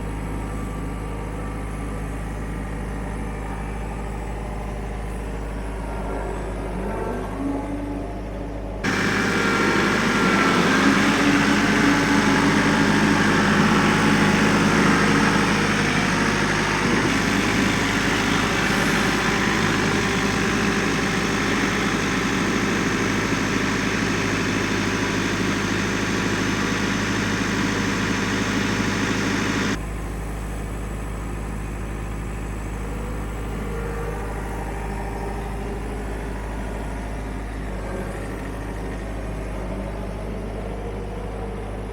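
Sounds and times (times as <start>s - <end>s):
machinery engine running: 8.6s - 41.9s.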